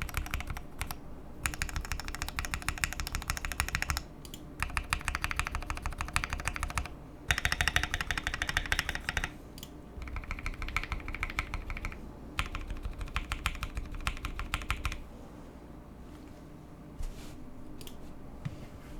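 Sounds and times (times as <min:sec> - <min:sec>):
mechanical keyboard typing: 0:00.0 - 0:09.4, 0:10.0 - 0:15.0.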